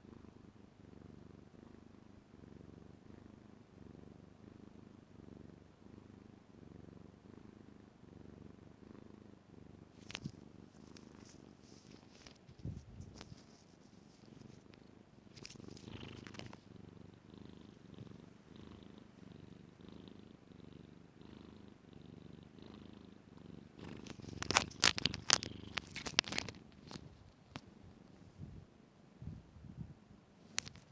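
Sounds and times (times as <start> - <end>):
kitten purring: 0.0 - 30.9
loud sharp clicks and scrapes: 23.8 - 27.6.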